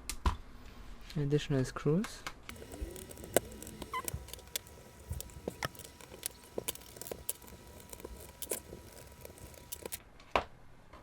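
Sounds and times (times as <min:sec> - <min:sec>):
screws clicking on laptop case: 0:02.5 - 0:10.0.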